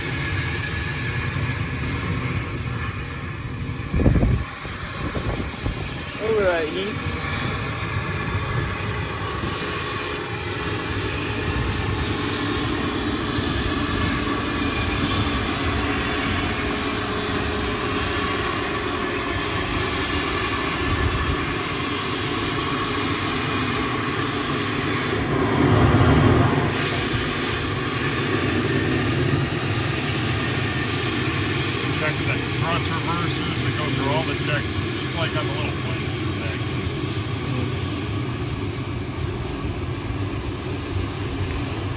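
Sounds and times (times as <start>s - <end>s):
jet engines running: 0.0s - 41.9s.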